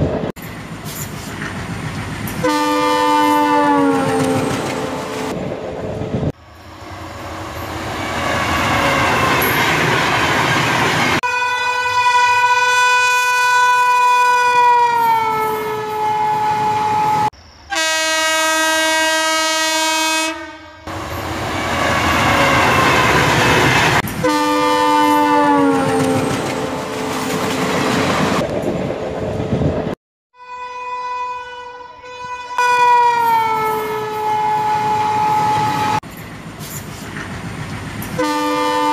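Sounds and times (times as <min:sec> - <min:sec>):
train rumbling clatter: 0:00.0 - 0:02.5, 0:25.8 - 0:30.0, 0:34.7 - 0:38.2
train horn blasts: 0:02.4 - 0:05.4, 0:11.2 - 0:20.9, 0:24.2 - 0:27.3, 0:30.4 - 0:36.0, 0:38.2 - 0:38.9.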